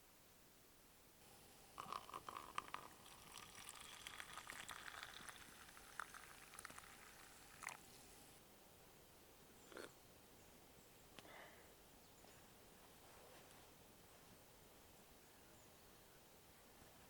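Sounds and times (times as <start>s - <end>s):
small fire crackling and hissing: 1.2s - 8.4s.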